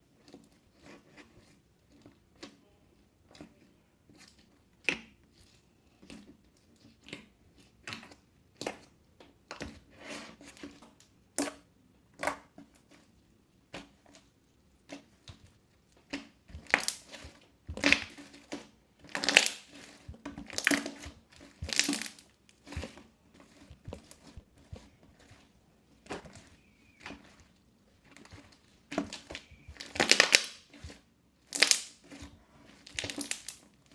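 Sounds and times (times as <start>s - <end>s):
crunchy slime crackling: 16.0s - 33.9s.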